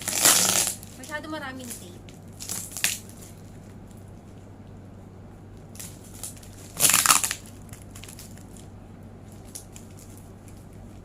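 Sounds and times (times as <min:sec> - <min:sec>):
packing tape ripping: 0:00.0 - 0:01.0, 0:02.3 - 0:03.3, 0:05.8 - 0:08.7
tape crackling: 0:00.0 - 0:11.0.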